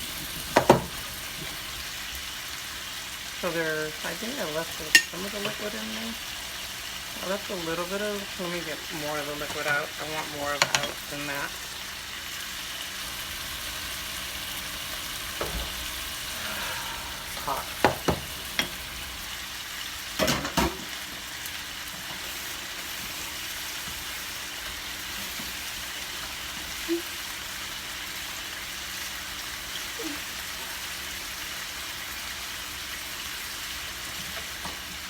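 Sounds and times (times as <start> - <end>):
chicken sizzling in a pan: 0.0 - 35.0
pot and utensils clattering: 9.4 - 11.4, 20.2 - 20.9.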